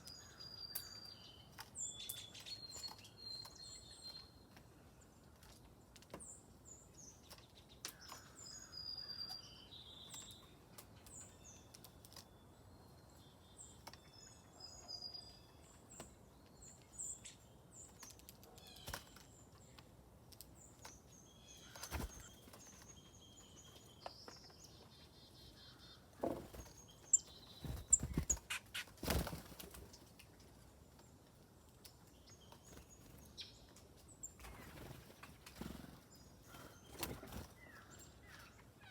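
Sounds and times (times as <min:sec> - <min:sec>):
songbirds chirping: 0:00.0 - 0:38.9
wing flaps: 0:27.6 - 0:29.7.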